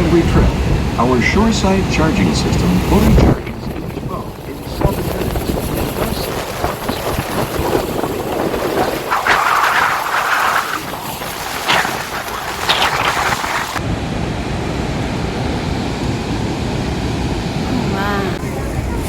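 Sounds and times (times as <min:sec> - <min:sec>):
deep steady rumble: 0:00.0 - 0:19.0
wind buffeting microphone: 0:00.0 - 0:19.0
river water rushing: 0:05.6 - 0:19.0.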